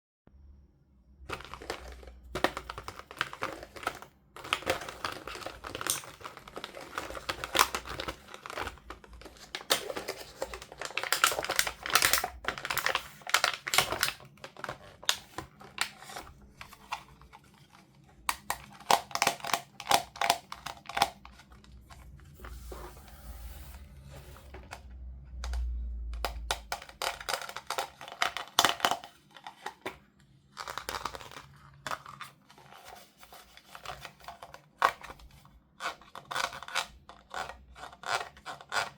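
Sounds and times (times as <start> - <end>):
packaging tearing: 1.3 - 21.8, 26.2 - 30.0
plastic and cardboard crinkling: 1.3 - 38.9.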